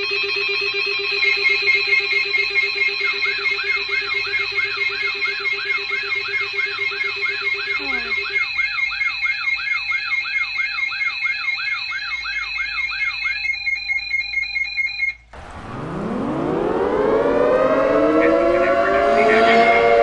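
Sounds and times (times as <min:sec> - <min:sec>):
steady high tones: 0:00.0 - 0:08.5, 0:15.4 - 0:20.0
electronic yelping alarm: 0:00.0 - 0:20.0
outdoor warning siren: 0:00.0 - 0:20.0.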